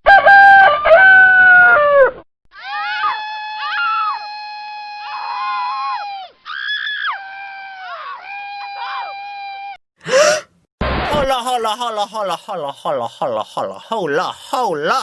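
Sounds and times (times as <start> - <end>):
rooster crowing: 0.0 - 2.2
woman falling scream: 1.4 - 10.4
man and woman screaming: 2.6 - 10.4.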